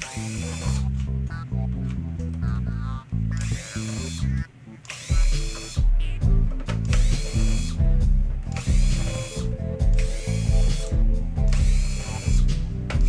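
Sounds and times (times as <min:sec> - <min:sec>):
background music with steady beat: 0:04.9 - 0:13.0.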